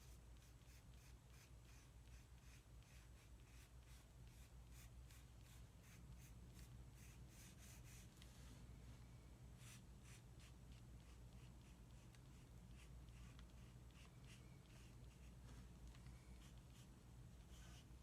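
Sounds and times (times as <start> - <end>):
drawing tool scratching on paper: 0.0 - 8.1, 17.5 - 17.9
low steady hum: 0.0 - 18.0.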